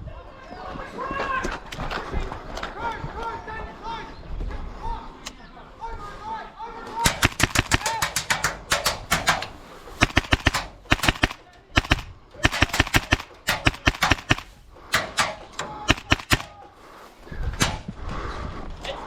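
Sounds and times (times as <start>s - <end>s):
airsoft rifle firing bursts: 7.0s - 16.7s.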